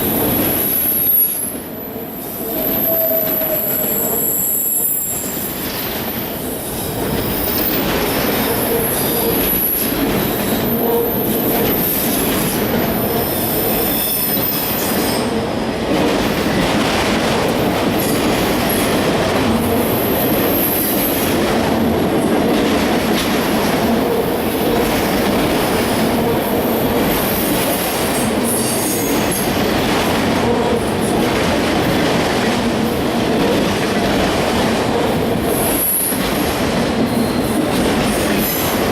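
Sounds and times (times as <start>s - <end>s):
freight train wheels rumbling: 0.0s - 38.9s.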